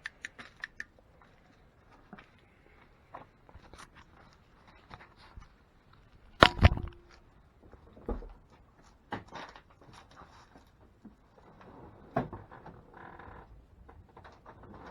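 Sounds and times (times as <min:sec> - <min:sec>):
small clicks and knocks: 0:06.4 - 0:07.2.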